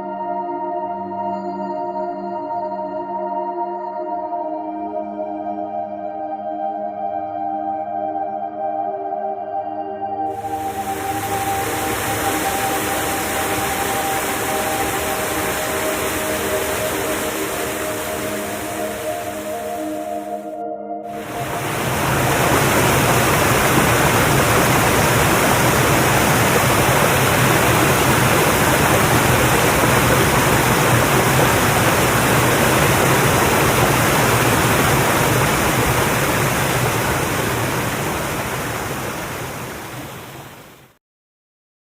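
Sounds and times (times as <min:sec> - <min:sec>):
waterfall rushing: 0:10.3 - 0:20.4, 0:21.1 - 0:40.9.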